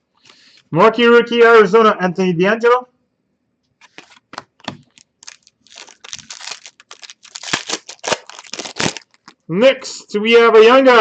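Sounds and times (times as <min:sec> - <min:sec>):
trading cards clicking and rustling: 0:03.8 - 0:09.4.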